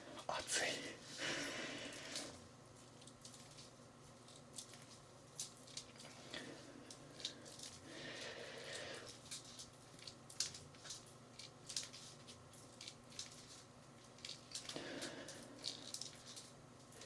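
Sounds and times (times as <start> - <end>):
man breathing heavily: 1.1 - 2.4, 7.8 - 9.1, 14.7 - 15.6.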